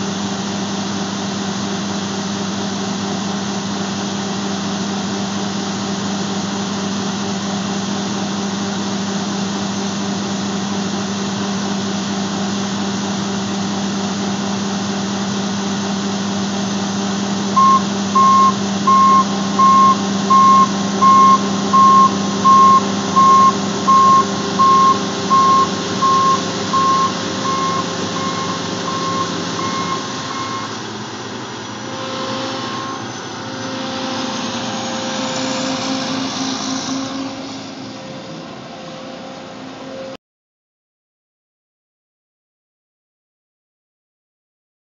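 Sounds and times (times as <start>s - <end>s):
combine harvester droning: 0.0s - 40.2s
backup alarm beeping: 17.6s - 30.8s, 32.5s - 33.1s.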